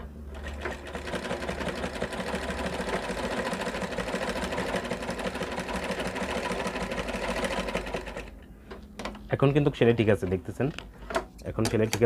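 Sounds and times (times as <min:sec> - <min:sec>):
sewing machine stitching: 0:00.3 - 0:08.3.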